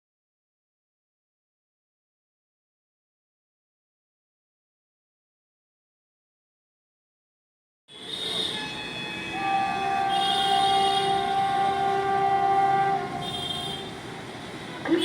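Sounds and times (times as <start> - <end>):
train horn blast: 7.9 - 14.0
approaching train running: 8.6 - 15.0.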